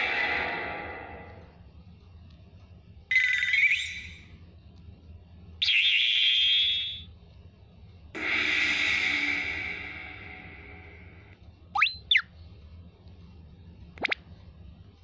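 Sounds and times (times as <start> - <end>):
electronic rising sweep effect: 0.0 - 1.5.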